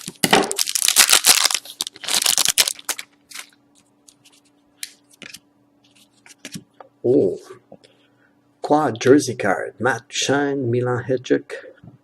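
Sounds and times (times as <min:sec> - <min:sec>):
wrapper tearing and crinkling: 0:00.0 - 0:03.6.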